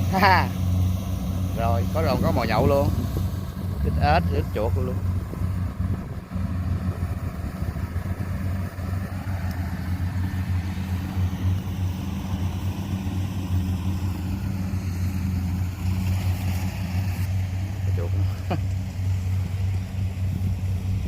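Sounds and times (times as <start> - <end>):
harvester diesel engine running: 0.0 - 21.0.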